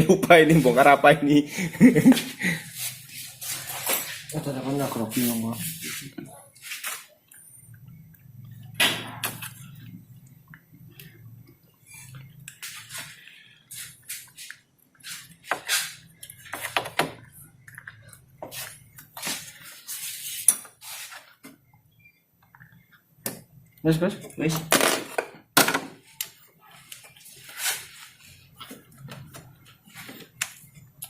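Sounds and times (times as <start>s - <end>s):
tools and metal parts clanking: 3.4s - 4.5s.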